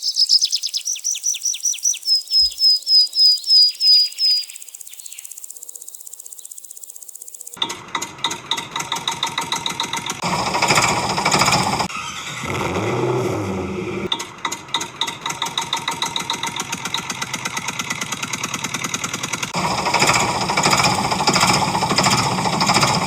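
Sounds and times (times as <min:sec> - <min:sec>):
bird whistling high notes: 0:00.0 - 0:05.3
faint insect chirping: 0:00.0 - 0:07.6
small motor rattling: 0:04.6 - 0:23.0.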